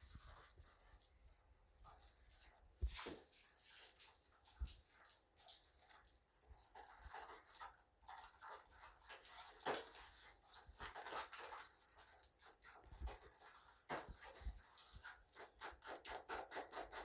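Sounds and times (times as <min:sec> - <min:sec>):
utensil scraping a bowl: 0:14.0 - 0:17.0.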